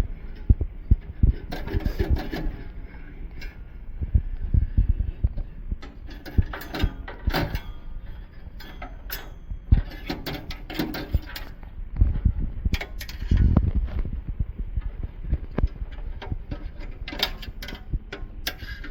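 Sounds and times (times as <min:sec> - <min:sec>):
heavy low thumps: 0:00.0 - 0:01.5, 0:03.8 - 0:05.8, 0:11.7 - 0:16.5.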